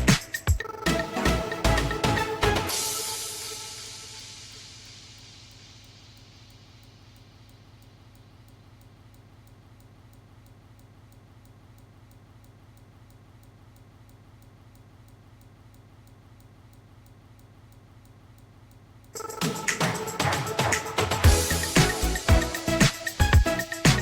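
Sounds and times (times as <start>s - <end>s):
faint steady ticking: 4.1s - 19.3s.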